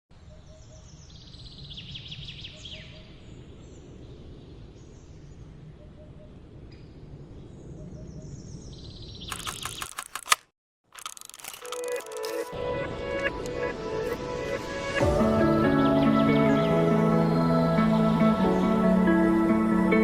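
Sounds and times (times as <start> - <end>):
birds chirping and trilling: 0.3 - 10.1
rapid clicks: 9.3 - 13.6.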